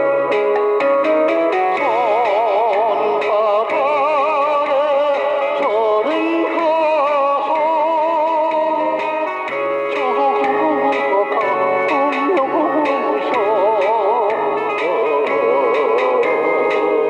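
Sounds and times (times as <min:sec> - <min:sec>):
backing track with guitar: 0:00.0 - 0:17.0
vibrato vocal melody: 0:00.0 - 0:17.0.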